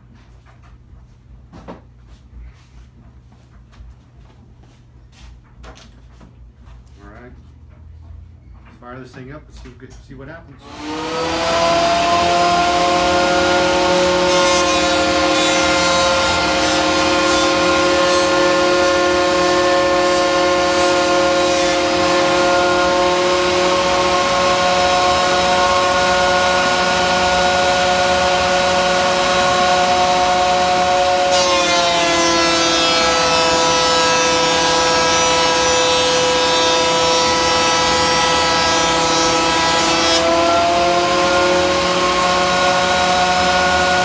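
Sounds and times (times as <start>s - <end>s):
dust collector running: 10.6s - 44.0s
thickness planer whining: 10.6s - 44.0s.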